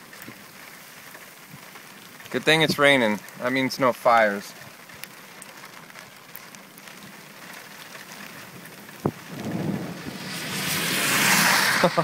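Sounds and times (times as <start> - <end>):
rain falling on car: 0.0 - 12.0
thunder rumble: 9.0 - 12.0
sharp thunder crack: 9.1 - 11.9.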